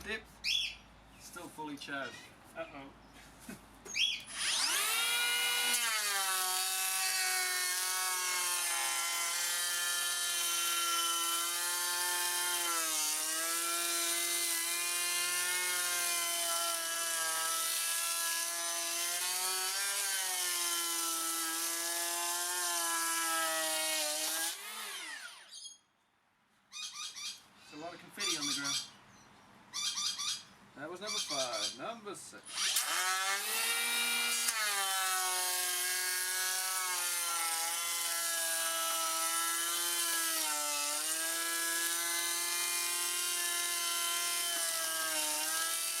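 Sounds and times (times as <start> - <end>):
electric planer whining: 4.3 - 25.5.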